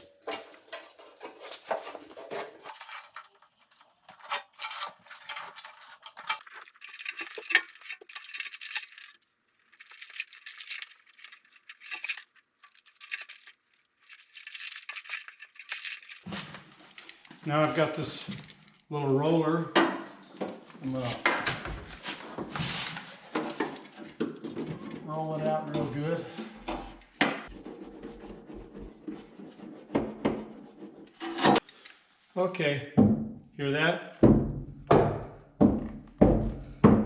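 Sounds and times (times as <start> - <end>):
sound-deadening mat crinkling: 0.0 - 16.4
paper backing peeling: 0.9 - 16.2.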